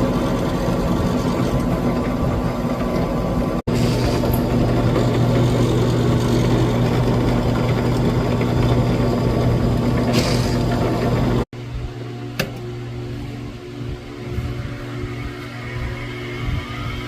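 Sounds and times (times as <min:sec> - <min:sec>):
wood lathe motor humming: 0:00.0 - 0:11.4.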